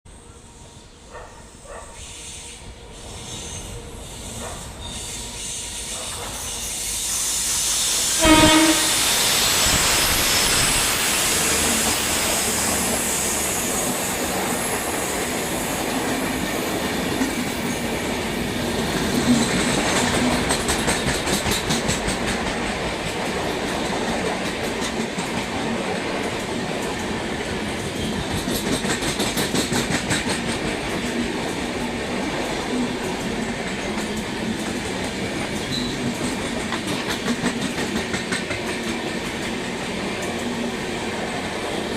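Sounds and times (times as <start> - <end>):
express train passing: 0.1 - 41.9
train horn blast: 8.1 - 9.2.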